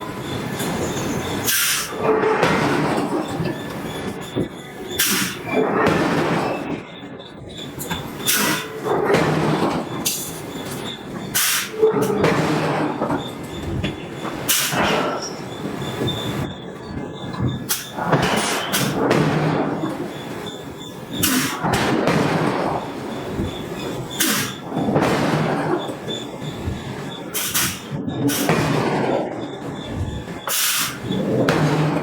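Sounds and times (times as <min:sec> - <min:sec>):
forging hammer striking steel: 0:27.2 - 0:32.0.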